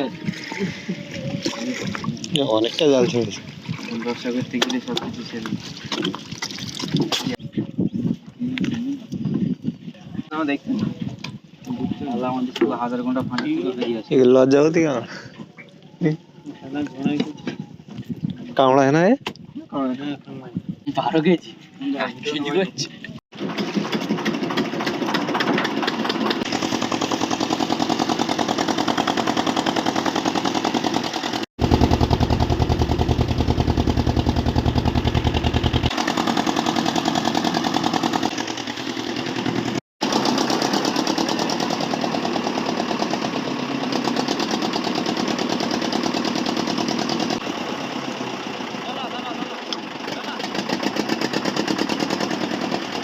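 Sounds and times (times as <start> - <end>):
boat engine chugging: 26.5 - 53.0.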